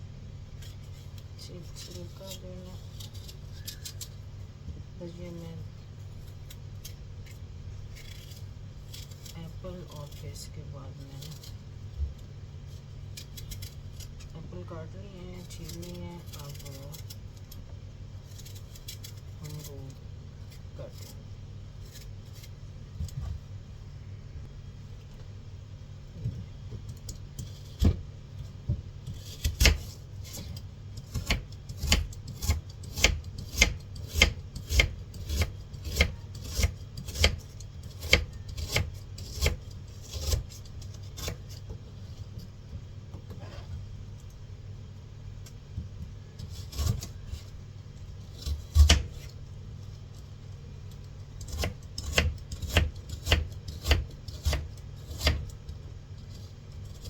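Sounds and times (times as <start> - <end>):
knife chopping on cutting board: 29.1 - 40.6, 48.4 - 49.3, 51.5 - 55.5.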